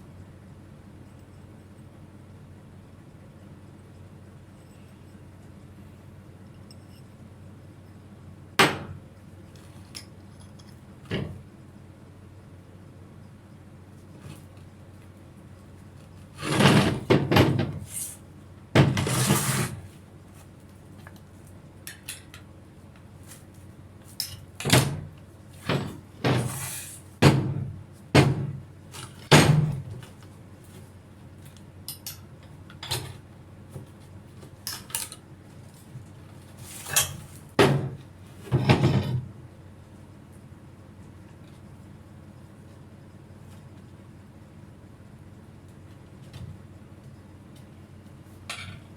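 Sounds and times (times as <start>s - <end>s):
metal tools clanking and scraping: 36.7s - 37.4s, 48.5s - 48.9s.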